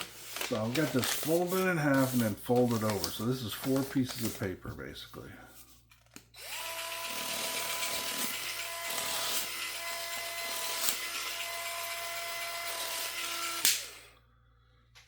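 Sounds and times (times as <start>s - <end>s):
paper crackling: 0.0s - 4.8s
paper cutter motor whining: 6.4s - 14.1s.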